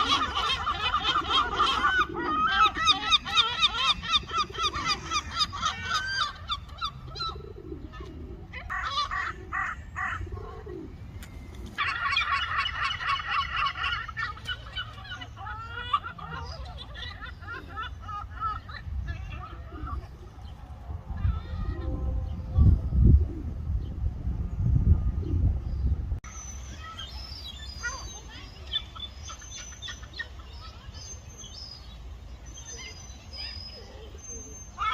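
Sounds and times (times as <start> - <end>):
gulls calling: 0.0 - 24.0, 26.2 - 34.9
low rumble: 18.9 - 26.2.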